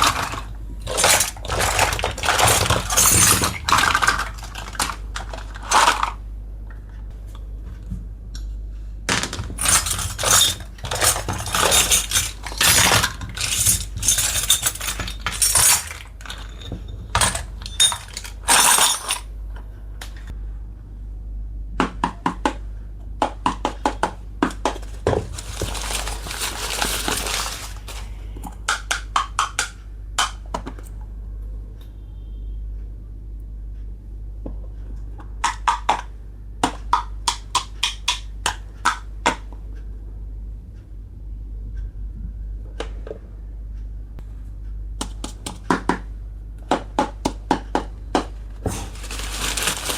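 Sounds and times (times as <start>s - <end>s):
toy kitchen pieces clinking: 0.0s - 6.2s, 9.2s - 19.3s, 25.4s - 28.0s
rustling: 25.2s - 28.2s, 48.6s - 49.9s.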